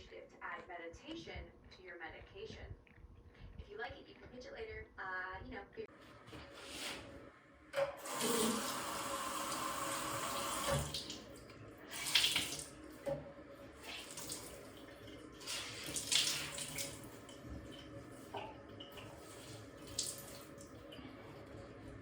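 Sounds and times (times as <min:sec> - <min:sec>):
running water: 0:08.0 - 0:22.0.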